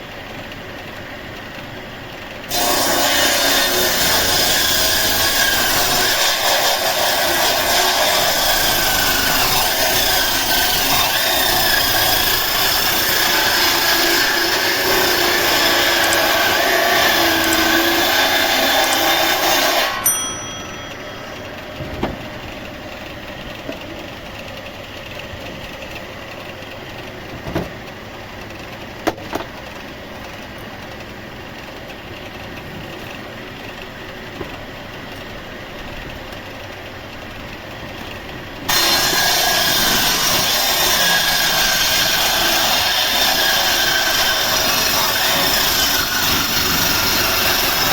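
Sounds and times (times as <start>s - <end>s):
saw cutting through wood: 2.5s - 21.7s, 38.7s - 47.9s
machine hum: 4.8s - 26.8s.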